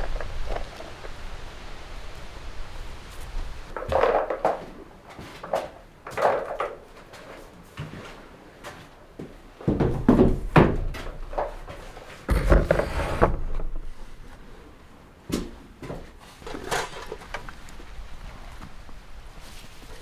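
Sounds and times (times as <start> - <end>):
rumbling noise: 0.0 - 3.7
knocks and thuds: 12.3 - 13.5.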